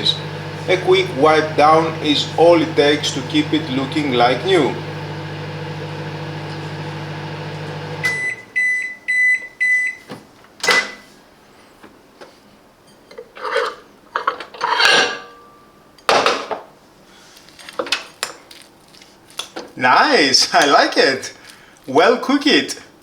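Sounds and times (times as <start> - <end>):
microwave oven humming: 0.0 - 8.6.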